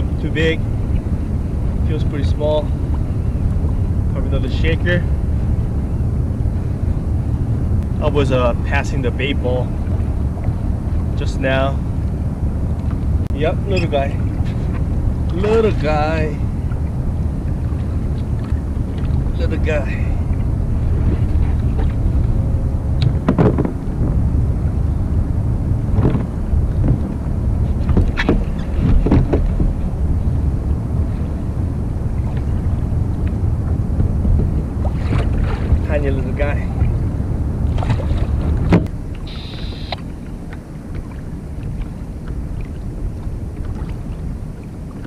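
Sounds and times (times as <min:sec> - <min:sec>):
noisy swishes: 0:00.0 - 0:45.0
water against kayak: 0:00.0 - 0:45.0
wind buffeting microphone: 0:00.0 - 0:45.0
brief high buzz: 0:39.2 - 0:40.0.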